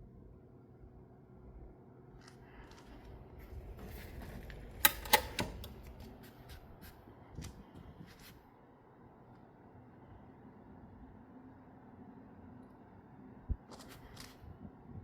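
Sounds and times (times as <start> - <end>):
sharp clicks: 4.8 - 5.9.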